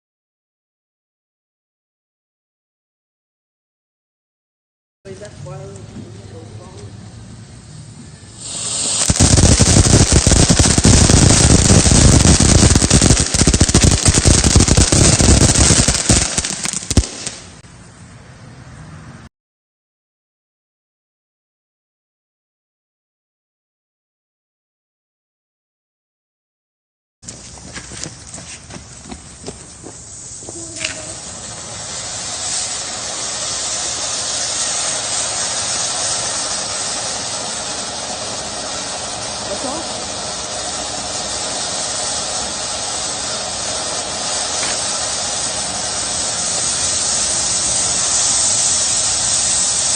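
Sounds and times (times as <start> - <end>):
firework hiss: 5.1 - 17.6, 27.3 - 49.9
firework rapid cracks and bangs: 8.4 - 17.6, 28.8 - 49.9.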